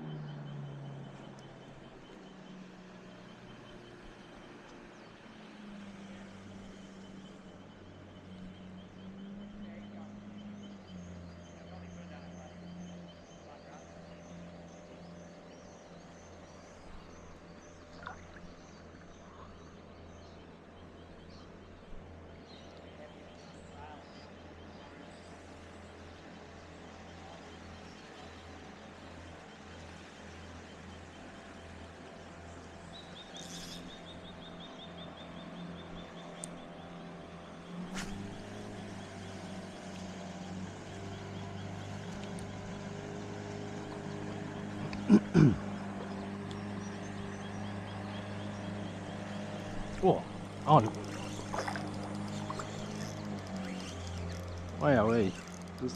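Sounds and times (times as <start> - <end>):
low engine hum: 0.0 - 55.9
small click: 4.6 - 4.8, 36.4 - 36.6, 37.9 - 38.4, 42.1 - 42.6
steady low hum: 30.8 - 55.9.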